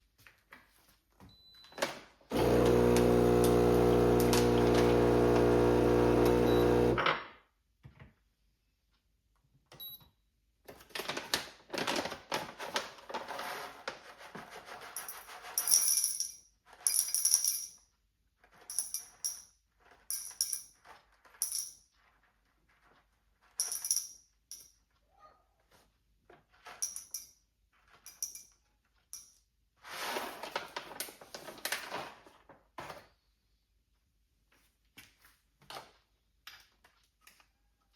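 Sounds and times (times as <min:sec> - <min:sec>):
electric motor humming: 0:02.3 - 0:07.0
metal clicks and clinks: 0:18.6 - 0:20.8, 0:26.7 - 0:29.5.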